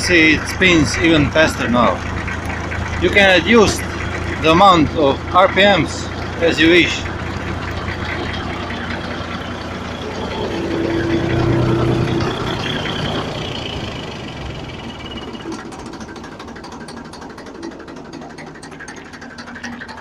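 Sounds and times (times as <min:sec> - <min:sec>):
machinery rattling clatter: 0:00.0 - 0:20.0
small tractor engine running: 0:00.0 - 0:20.0.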